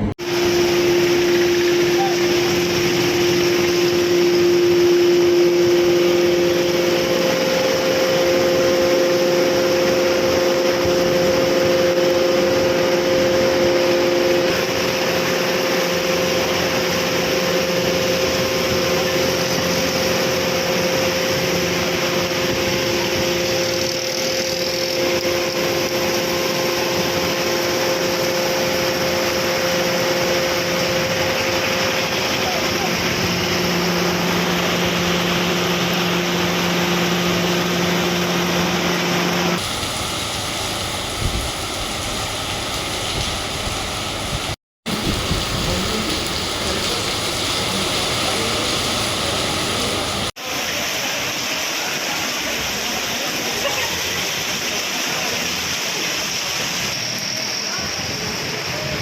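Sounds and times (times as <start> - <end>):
mechanical hum: 0.0 - 50.4
loud even hiss: 39.6 - 50.4.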